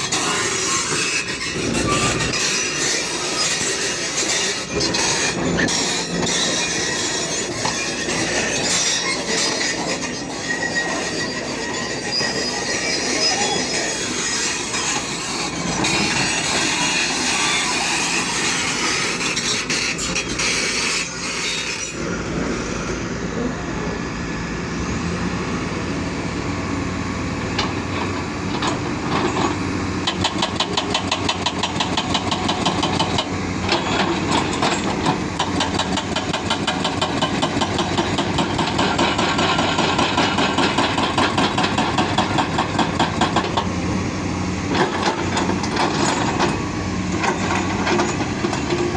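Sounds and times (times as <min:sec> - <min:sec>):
excavator diesel engine humming: 0:00.0 - 0:21.4, 0:22.0 - 0:48.9
tracks clanking: 0:26.1 - 0:48.9.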